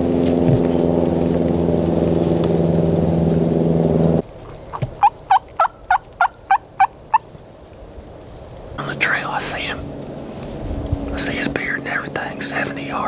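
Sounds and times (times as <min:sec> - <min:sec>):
engine drone: 0:00.0 - 0:05.0, 0:08.8 - 0:13.0
wild turkey yelps: 0:04.7 - 0:07.3.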